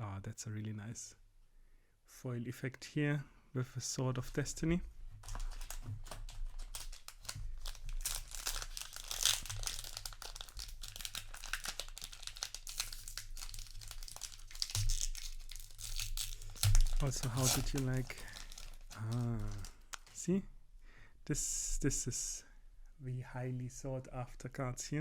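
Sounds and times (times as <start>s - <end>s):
wrappers crinkling and tearing: 5.2s - 20.2s
cards being flipped: 16.0s - 20.2s.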